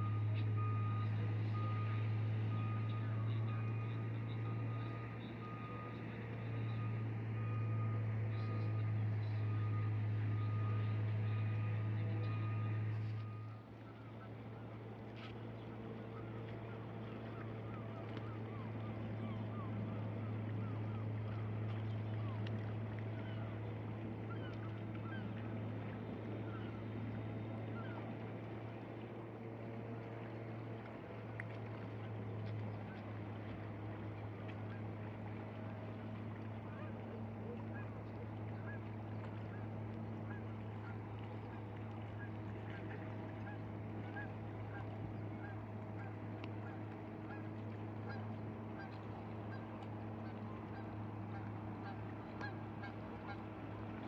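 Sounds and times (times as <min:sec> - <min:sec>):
geese honking: 0:48.1 - 0:53.4.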